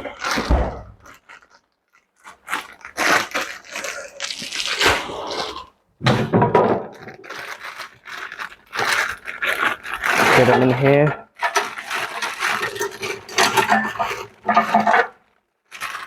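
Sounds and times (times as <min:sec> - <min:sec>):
plastic bag rustling and crunching: 0:00.0 - 0:16.0.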